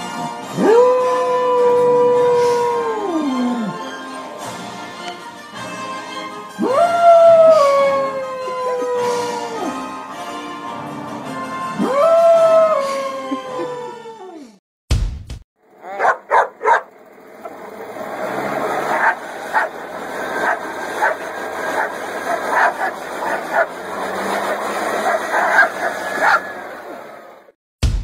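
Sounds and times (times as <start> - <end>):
dog barking and yipping: 15.8 - 17.0, 18.7 - 26.6.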